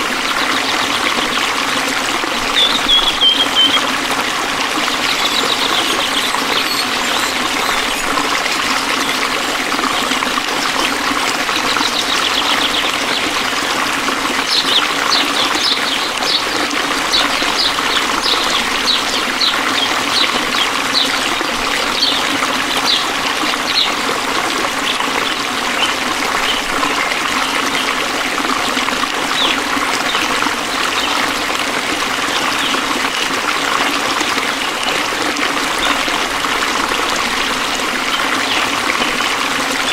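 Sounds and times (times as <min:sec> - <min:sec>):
stream water trickling: 0:00.0 - 0:39.9
short high chirps: 0:02.6 - 0:03.9, 0:04.9 - 0:09.4.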